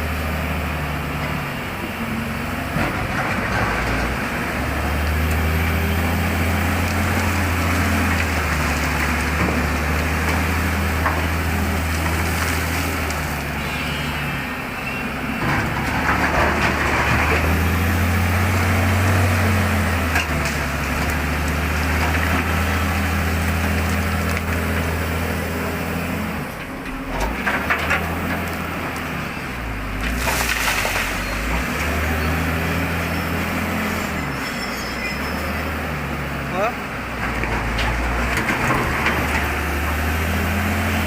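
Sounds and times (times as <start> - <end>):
excavator diesel engine: 0.0 - 41.0
crackling and scraping of digging: 2.8 - 14.2, 15.3 - 35.5.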